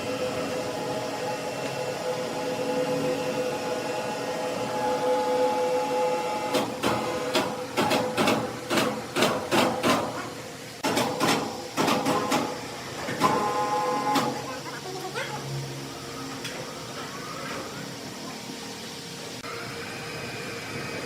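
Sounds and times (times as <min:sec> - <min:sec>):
sawmill machinery humming: 0:00.0 - 0:09.2, 0:10.3 - 0:21.0
sharp knocks and clanks: 0:06.5 - 0:12.6.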